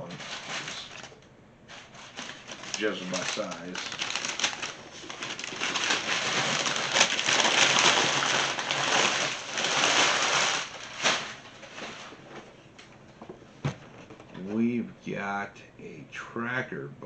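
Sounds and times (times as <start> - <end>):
sharp packaging crackle: 0.0 - 12.5
packaging crinkling and rustling: 0.0 - 13.0.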